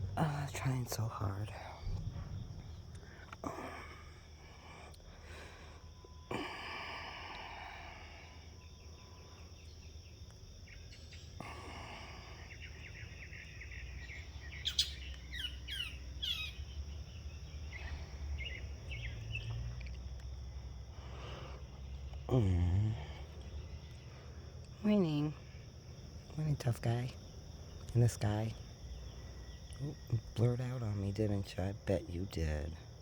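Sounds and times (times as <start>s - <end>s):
low steady rumble: 0.0s - 9.4s
high downward-sliding bird chirps: 5.6s - 20.1s
raspy bird call: 14.6s - 16.7s.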